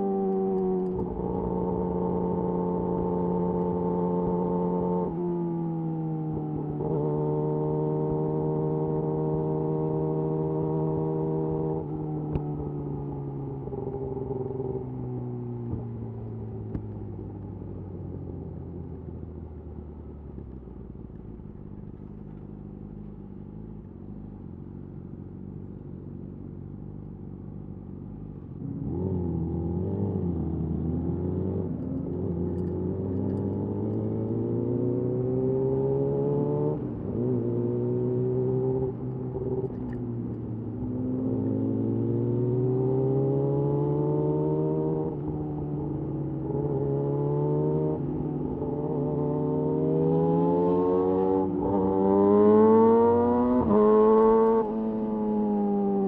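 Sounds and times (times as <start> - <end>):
motorcycle engine revving: 5.9 - 12.0, 28.3 - 56.0
motorcycle gear changes: 31.8 - 34.4.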